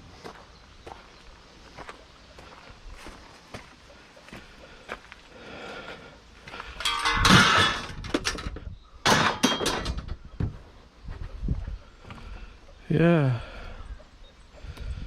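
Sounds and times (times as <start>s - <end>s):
hard objects crashing: 6.8s - 10.2s
light knocks and clinks: 6.8s - 10.2s.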